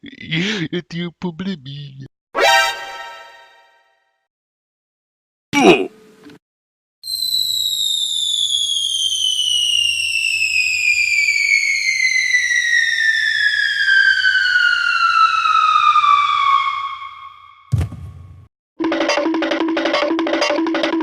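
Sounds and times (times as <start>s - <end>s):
cartoon falling whistle: 7.0s - 17.8s
low thump: 17.7s - 18.4s.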